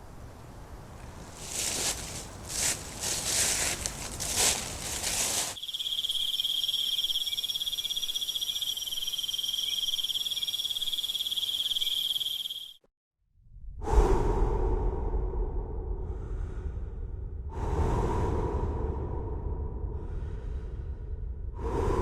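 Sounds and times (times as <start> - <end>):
crickets chirring: 0.4 - 12.8
rustling swishes: 1.0 - 5.6
fainter higher insect trill: 2.5 - 12.8.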